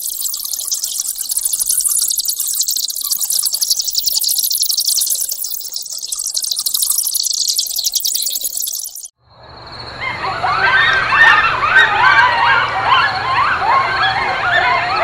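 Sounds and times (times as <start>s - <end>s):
high-pitched insect buzz: 0.0s - 9.1s
quick rising chirps: 0.0s - 9.1s.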